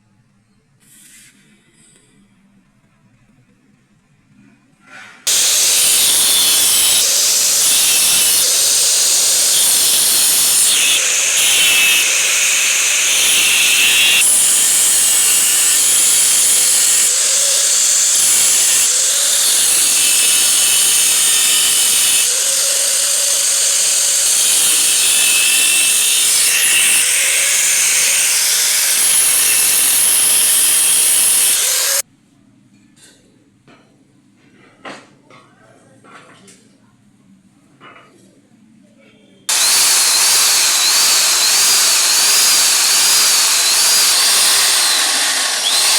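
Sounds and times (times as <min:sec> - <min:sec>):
hissing grind of metal machining: 0:05.3 - 0:32.0, 0:39.5 - 0:45.9.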